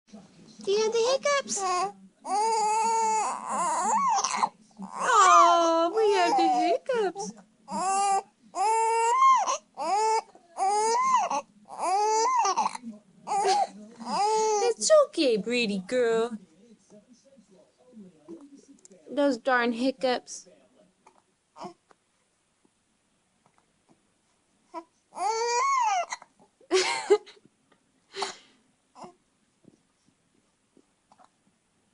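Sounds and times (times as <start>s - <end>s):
infant crying: 1.5s - 6.8s, 7.7s - 14.8s, 24.7s - 26.3s.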